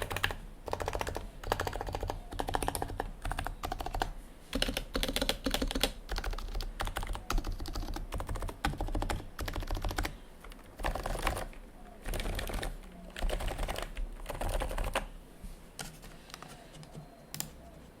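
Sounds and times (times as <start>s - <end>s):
keyboard typing: 0.0s - 15.1s, 15.8s - 18.0s.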